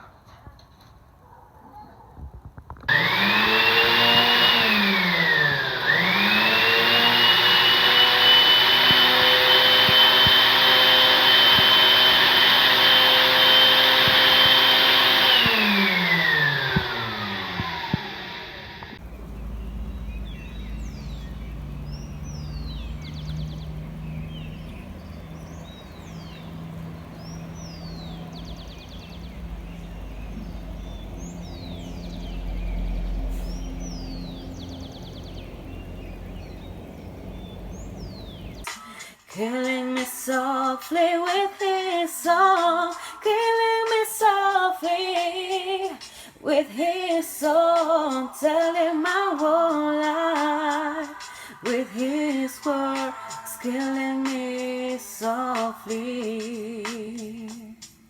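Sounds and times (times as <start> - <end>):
birds chirping: 2.9 - 38.7
electric motor whining: 2.9 - 38.7
low outdoor rumble: 18.9 - 38.7.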